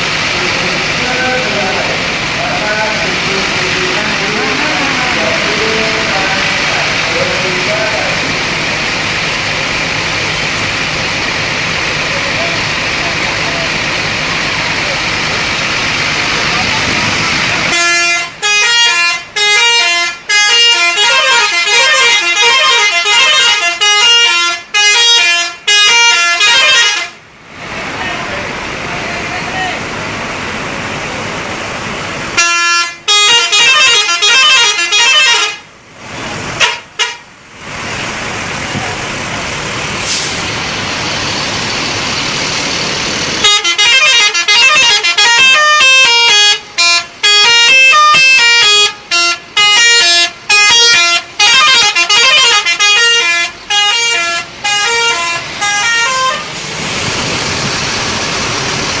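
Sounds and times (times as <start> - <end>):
road traffic noise: 0.0 - 59.0
bus musical horn tune: 17.6 - 27.2, 32.4 - 35.7, 36.6 - 37.3, 43.4 - 56.6.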